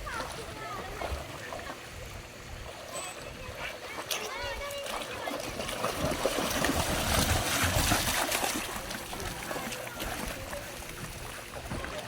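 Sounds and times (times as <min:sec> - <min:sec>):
dogs splashing in water: 0:00.0 - 0:02.0, 0:02.6 - 0:12.0
running water: 0:00.0 - 0:12.0.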